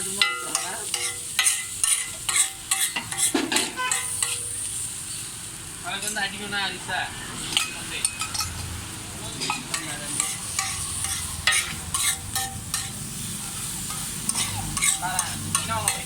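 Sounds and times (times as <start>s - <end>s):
steel spatulas clanking on griddle: 0.0s - 4.5s, 7.5s - 8.7s, 9.3s - 16.0s
steady sizzling: 0.0s - 16.0s.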